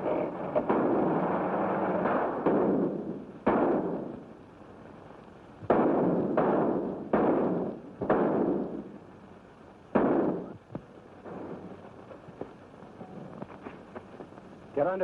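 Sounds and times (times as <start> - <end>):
gunshots with echo: 0.5 - 4.2, 5.7 - 8.9, 9.9 - 10.6.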